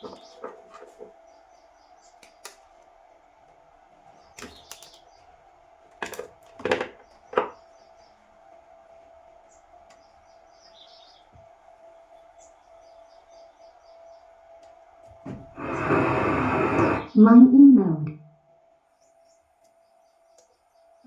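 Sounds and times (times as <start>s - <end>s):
small birds chirping: 0.0s - 16.0s, 18.8s - 21.0s
faint steady tone: 7.4s - 21.0s.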